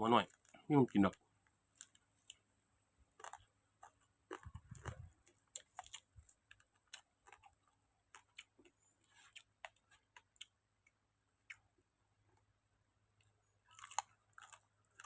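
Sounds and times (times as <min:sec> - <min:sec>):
chewing with crunches: 0:00.2 - 0:02.5, 0:03.1 - 0:10.6, 0:13.2 - 0:15.0.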